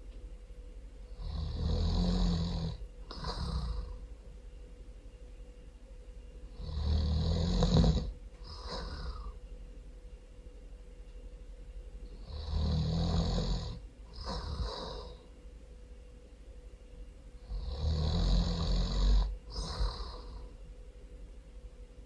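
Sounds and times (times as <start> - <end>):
person snoring loudly: 1.1 - 4.0, 6.5 - 9.4, 12.2 - 15.2, 17.4 - 20.5.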